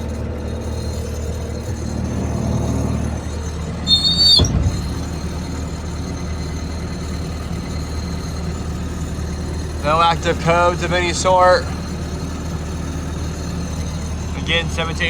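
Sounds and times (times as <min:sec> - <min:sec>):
diesel engine idling: 0:00.0 - 0:15.0
thump: 0:04.1 - 0:05.3.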